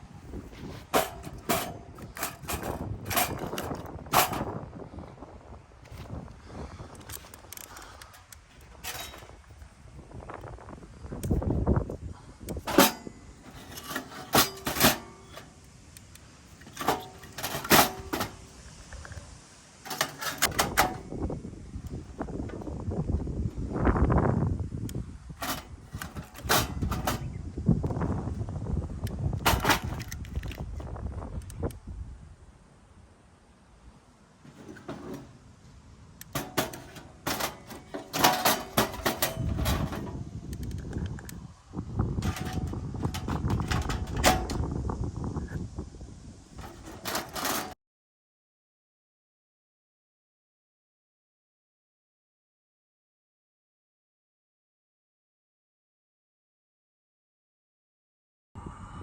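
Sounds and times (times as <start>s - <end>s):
handling knocks clicks and rustles: 0.0s - 4.7s, 5.8s - 23.8s, 24.9s - 28.2s, 29.0s - 31.6s, 34.4s - 41.4s, 42.0s - 44.8s, 46.5s - 47.8s
metal objects clanking: 0.5s - 4.6s, 7.1s - 9.4s, 12.5s - 15.6s, 16.6s - 18.6s, 19.8s - 21.1s, 25.4s - 27.4s, 29.4s - 30.6s, 36.3s - 40.3s, 42.2s - 44.7s, 46.6s - 47.8s.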